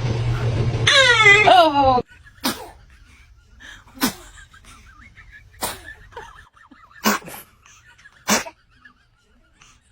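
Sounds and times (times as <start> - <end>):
short sneezes: 2.4 - 2.8, 4.0 - 4.4, 5.6 - 6.0, 7.0 - 7.5, 8.3 - 8.6.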